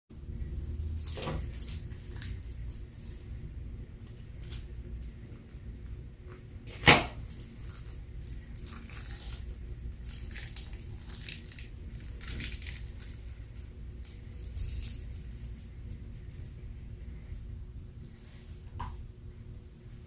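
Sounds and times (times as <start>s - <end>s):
slime materials crackling and rustling: 0.8s - 3.3s, 6.3s - 16.6s.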